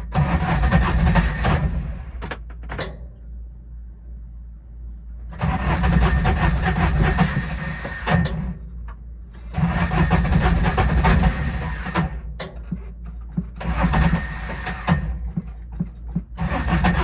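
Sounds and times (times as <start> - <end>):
starter cranking diesel engine: 0.0 - 2.7, 5.3 - 8.6, 9.4 - 17.0.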